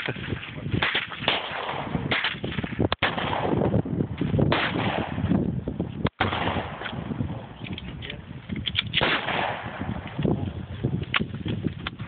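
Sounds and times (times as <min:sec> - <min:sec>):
gunshots: 0:00.0 - 0:03.7, 0:04.4 - 0:05.3, 0:06.1 - 0:07.1, 0:08.9 - 0:10.0.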